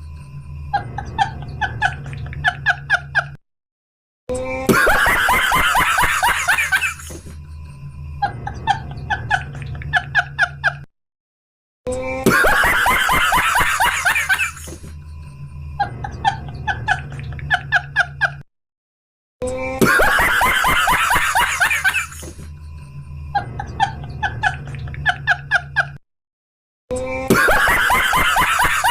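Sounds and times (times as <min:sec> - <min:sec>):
laughter-like voice: 0:00.7 - 0:03.4, 0:04.3 - 0:07.3, 0:08.2 - 0:10.9, 0:11.9 - 0:15.0, 0:15.8 - 0:18.5, 0:19.4 - 0:26.0, 0:26.9 - 0:28.9.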